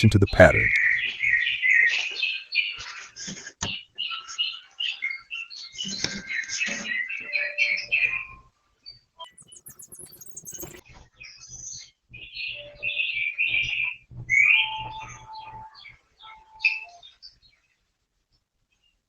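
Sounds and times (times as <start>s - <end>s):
birds chirping: 9.2s - 10.8s.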